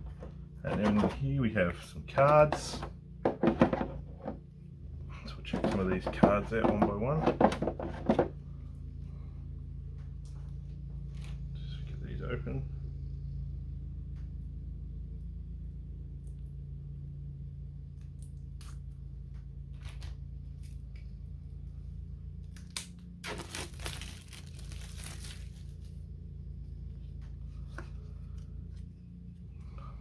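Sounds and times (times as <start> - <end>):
steady low hum: 0.0 - 30.0
plastic shrink wrap tearing: 22.6 - 26.0.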